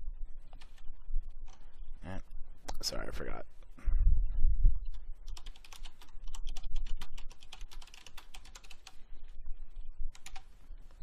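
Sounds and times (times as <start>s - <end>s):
typing on keyboard: 5.3s - 9.0s, 10.1s - 10.5s.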